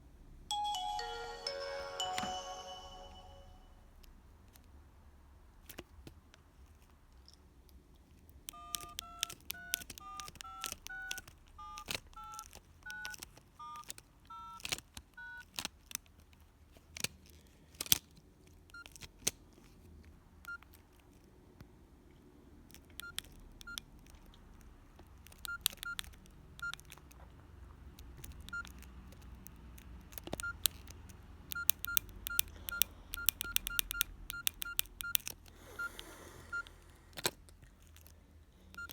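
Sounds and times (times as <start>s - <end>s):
phone dialing tones: 0.5s - 3.6s, 8.6s - 14.6s, 31.5s - 36.8s.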